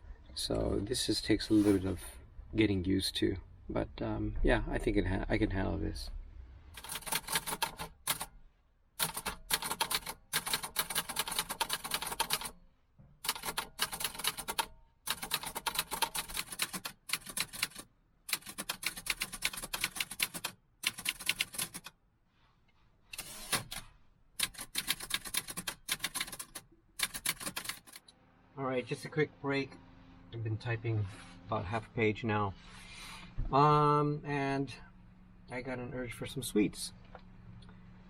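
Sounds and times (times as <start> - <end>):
typewriter key strikes: 9.0 - 12.5, 13.2 - 21.9, 24.4 - 28.0.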